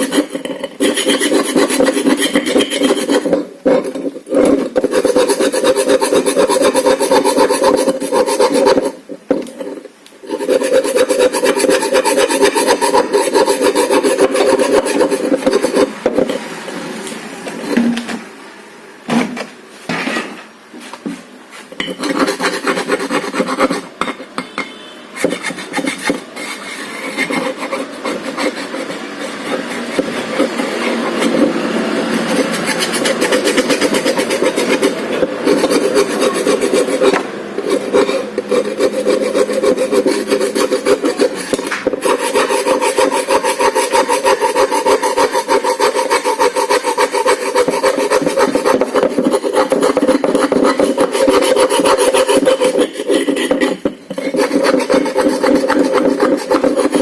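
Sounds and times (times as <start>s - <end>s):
rough rasping scraping: 0.0s - 16.5s, 21.8s - 57.0s.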